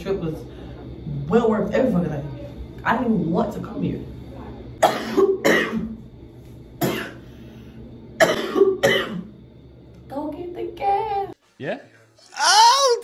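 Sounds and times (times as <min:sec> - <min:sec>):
person coughing: 0:04.8 - 0:05.9, 0:06.8 - 0:07.2, 0:08.2 - 0:09.3.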